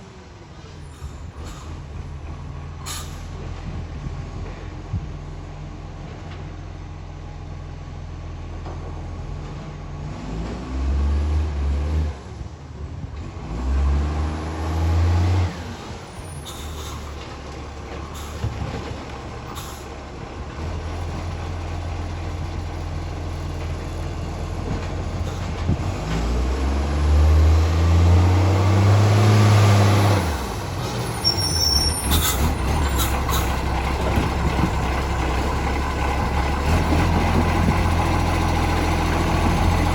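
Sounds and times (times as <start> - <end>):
diesel truck engine idling and revving: 0.0 - 39.9
short sharp hisses: 2.9 - 3.4, 16.4 - 17.2.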